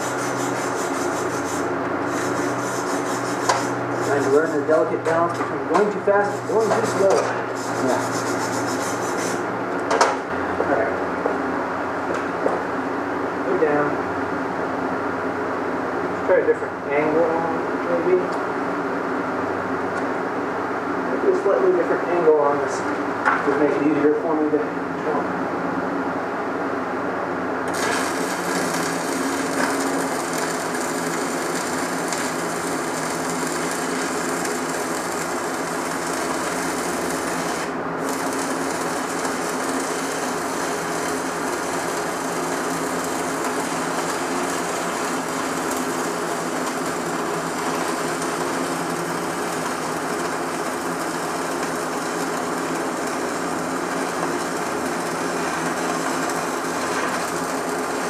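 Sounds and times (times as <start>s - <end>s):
welding arc crackling sizzle: 0.0s - 10.4s, 27.6s - 58.0s.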